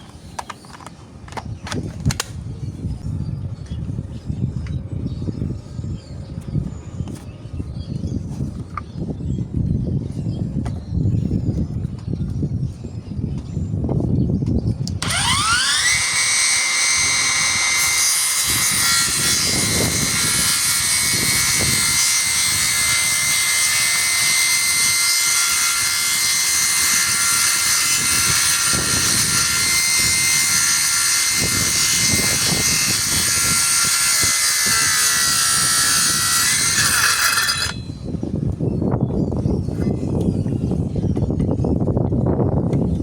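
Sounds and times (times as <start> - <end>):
circular saw whining: 14.8 - 38.3.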